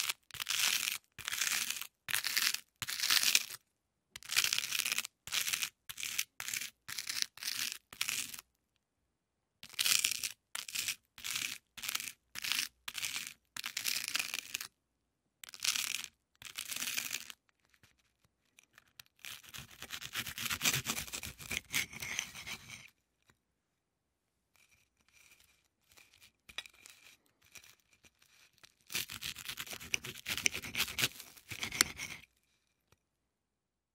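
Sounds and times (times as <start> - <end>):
knife scraping butter on toast: 0.0 - 3.6, 19.1 - 22.9, 24.5 - 32.3.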